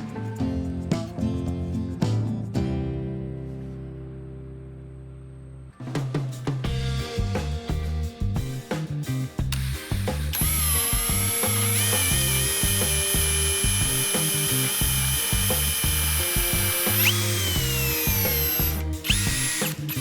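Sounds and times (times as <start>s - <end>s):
background music with steady beat: 6.1s - 20.0s
power tool motor whining: 9.5s - 20.0s.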